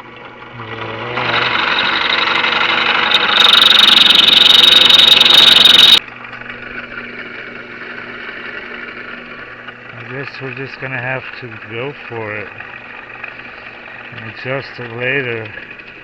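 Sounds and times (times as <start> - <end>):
motor humming: 0.5 - 6.0
drill press grinding through metal: 0.6 - 6.0.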